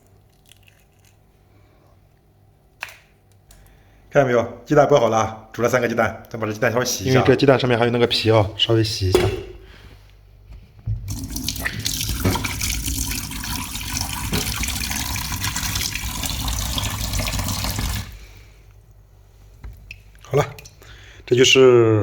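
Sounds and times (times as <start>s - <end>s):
tap water running into sink: 11.0s - 18.2s.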